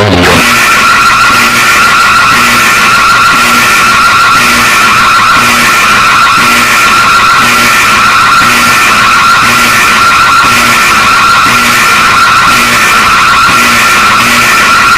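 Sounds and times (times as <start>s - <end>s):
low pulsing note: 0.0s - 1.6s
harsh alert alarm tone: 0.0s - 14.9s.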